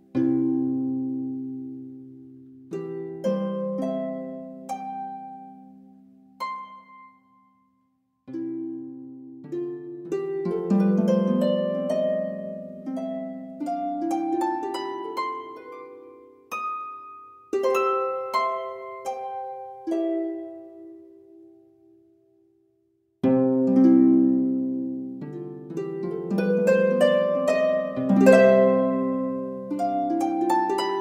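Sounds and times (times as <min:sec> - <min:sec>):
plucked string music: 0:08.3 - 0:21.8, 0:23.2 - 0:31.0.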